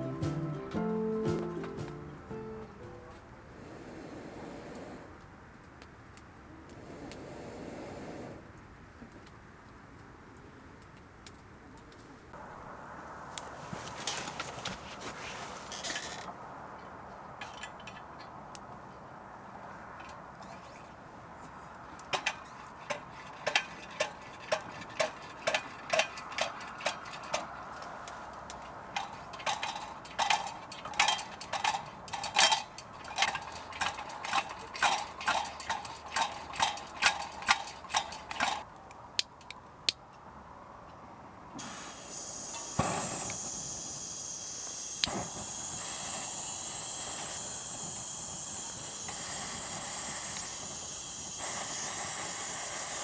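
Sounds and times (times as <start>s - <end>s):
hand pump squeaky clicking: 20.0s - 21.0s, 22.1s - 38.6s, 41.6s - 53.0s
pressurised fuel hissing: 41.6s - 53.0s.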